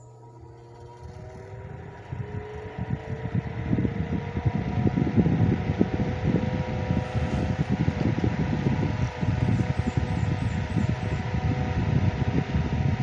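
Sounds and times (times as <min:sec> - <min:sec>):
desk fan motor humming: 0:00.0 - 0:13.0
air buffeting microphone: 0:00.8 - 0:13.0.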